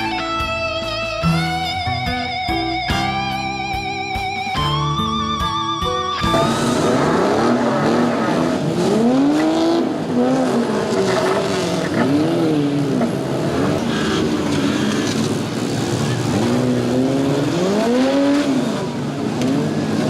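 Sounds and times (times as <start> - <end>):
car engines revving: 6.2 - 20.0.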